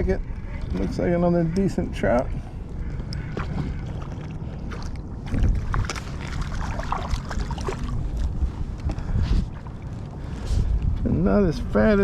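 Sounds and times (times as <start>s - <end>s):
water lapping at boat: 0.0s - 11.0s
wind buffeting microphone: 0.0s - 12.0s
knocks and splashes: 3.3s - 8.4s.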